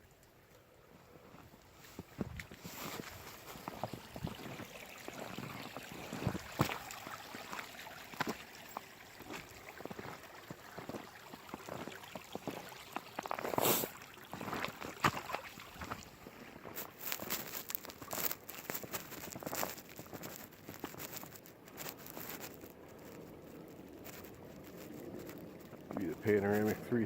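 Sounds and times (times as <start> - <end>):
rustling: 1.0 - 27.0
footsteps crunching in snow: 1.2 - 26.8
scuff in snow: 1.4 - 8.5, 13.4 - 22.6.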